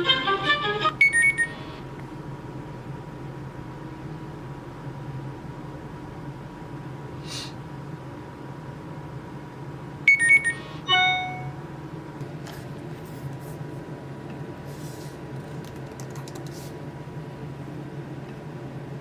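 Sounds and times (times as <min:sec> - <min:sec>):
steady low hum: 0:00.0 - 0:15.6
short high electronic beeps: 0:01.0 - 0:01.6, 0:10.1 - 0:11.6
ringing tone: 0:10.1 - 0:11.6.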